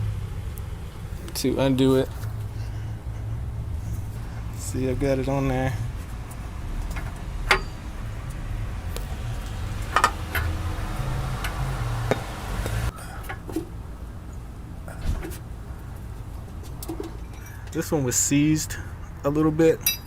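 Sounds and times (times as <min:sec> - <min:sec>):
low background rumble: 0:00.0 - 0:19.3
spanner knocking on metal: 0:09.9 - 0:10.6.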